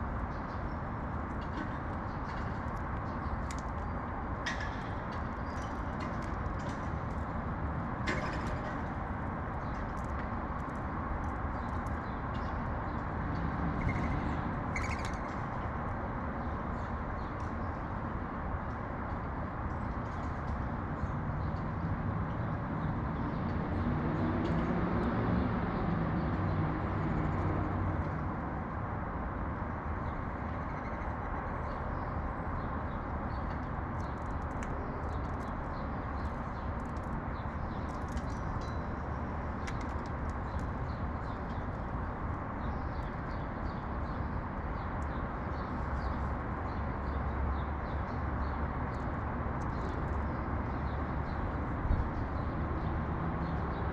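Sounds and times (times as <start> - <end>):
traffic rumble: 0.0 - 53.9
bird chirps: 14.8 - 15.2.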